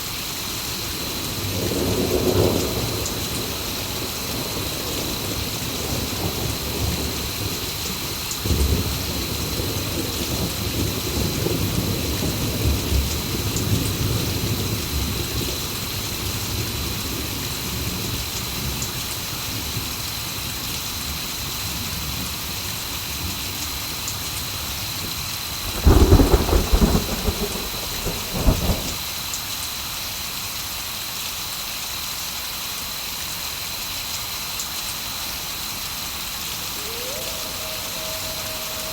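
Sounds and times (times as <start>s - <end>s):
heavy rain: 0.0s - 38.9s
thunder rumbling and cracking: 0.9s - 18.2s, 25.5s - 29.0s.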